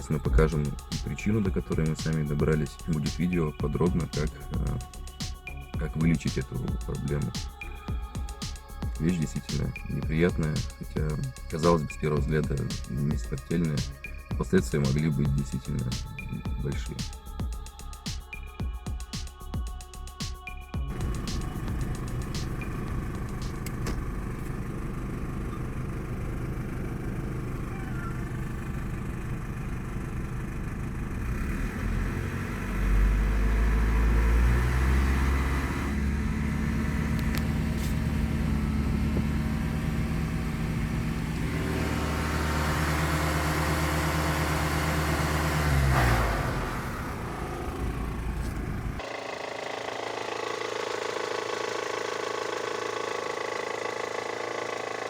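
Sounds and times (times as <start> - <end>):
car engine idling and revving: 0.0 - 17.0, 20.7 - 55.0
engine knock: 0.0 - 17.1, 20.8 - 55.0.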